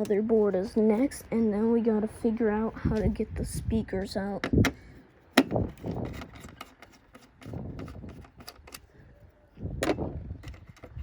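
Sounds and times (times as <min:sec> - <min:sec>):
plastic and metal parts clicking: 0:05.4 - 0:08.9.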